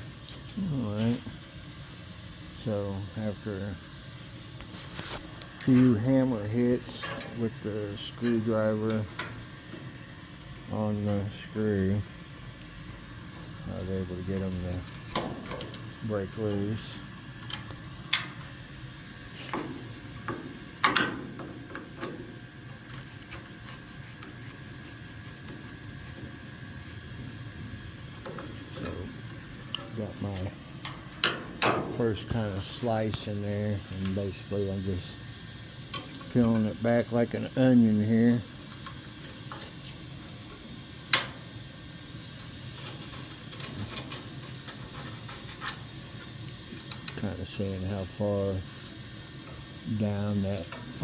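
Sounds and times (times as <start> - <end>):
steady low hum: 0.0 - 51.0
sharp clicks and knocks: 19.5 - 22.3.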